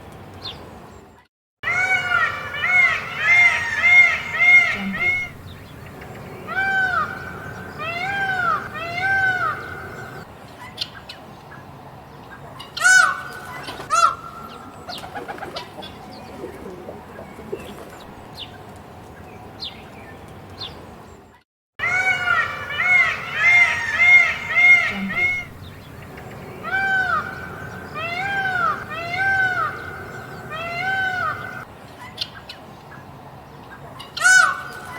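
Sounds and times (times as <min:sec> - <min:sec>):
peacock wailing calls: 0:01.6 - 0:10.3, 0:12.8 - 0:18.2, 0:21.8 - 0:32.3, 0:34.0 - 0:34.9
small birds chirping: 0:02.9 - 0:21.4, 0:23.1 - 0:34.9.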